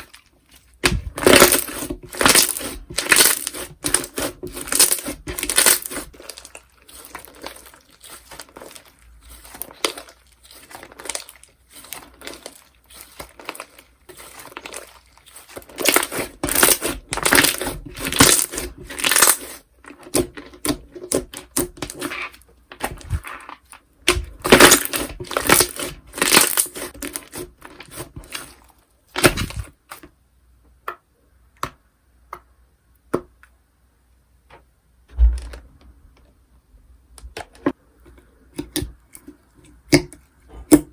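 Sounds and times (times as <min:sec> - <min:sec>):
slime crackling and popping: 0:00.0 - 0:29.7.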